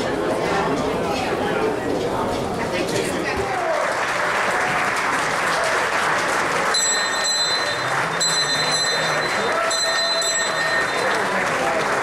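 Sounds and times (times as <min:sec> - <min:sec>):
crowd applauding and cheering: 0:03.4 - 0:12.0.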